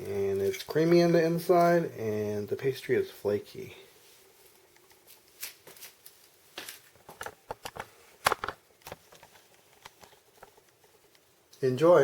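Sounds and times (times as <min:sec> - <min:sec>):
pastry crackling and crunching: 0:04.5 - 0:11.3.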